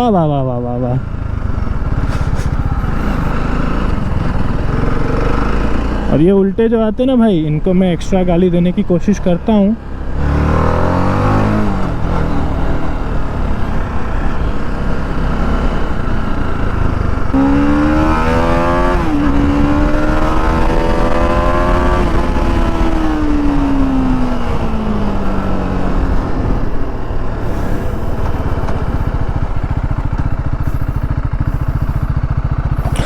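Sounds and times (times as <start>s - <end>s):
motorcycle engine: 0.0s - 33.0s
wind noise: 10.6s - 30.1s.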